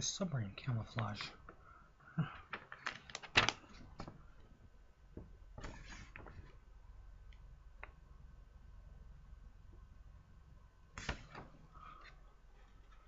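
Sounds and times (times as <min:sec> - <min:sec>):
paper rustling: 0:02.5 - 0:04.2, 0:05.6 - 0:06.6.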